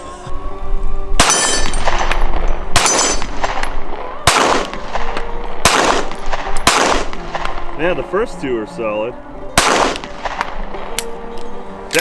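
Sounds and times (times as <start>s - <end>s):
pistol shots: 1.2s - 7.8s, 9.5s - 11.4s.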